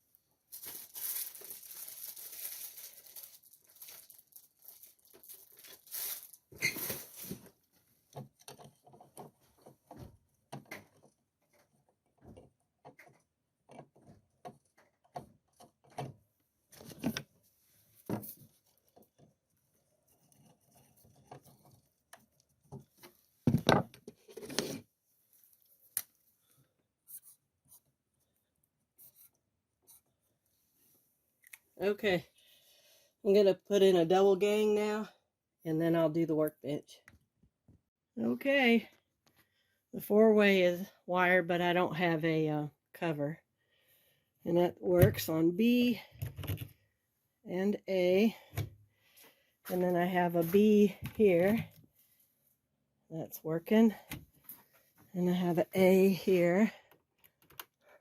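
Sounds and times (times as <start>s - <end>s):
hands working on wiring: 6.5s - 17.4s, 18.0s - 24.8s, 56.9s - 57.8s.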